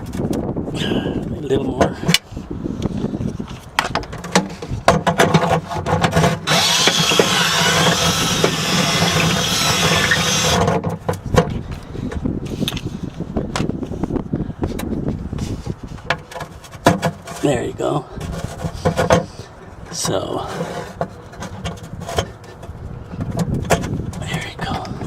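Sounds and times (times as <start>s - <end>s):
handling clicks and knocks: 3.5s - 7.3s, 15.9s - 17.6s, 18.2s - 25.0s
power drill running: 6.5s - 10.7s.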